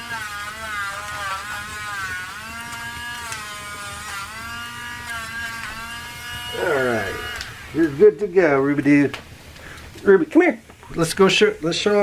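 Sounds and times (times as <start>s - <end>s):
dog nail grinder buzzing: 0.0s - 8.0s.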